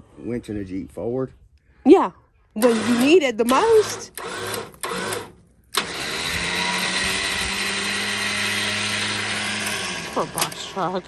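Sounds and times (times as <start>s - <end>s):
winch motor humming and whining: 2.6s - 11.0s.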